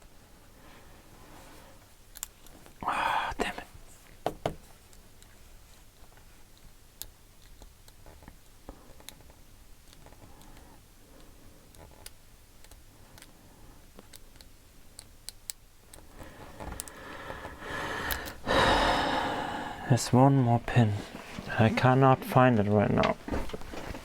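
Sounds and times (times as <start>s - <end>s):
lock pick clicking pins: 14.0s - 17.0s.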